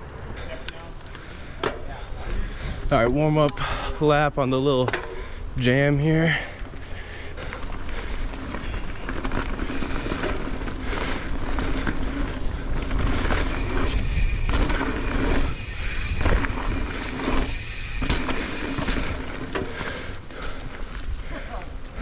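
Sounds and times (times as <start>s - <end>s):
bike tyres rolling on dirt: 0.0s - 22.0s
wind rumbling on microphone: 2.2s - 4.0s, 7.7s - 22.0s
bike clacking and rattling: 6.3s - 22.0s.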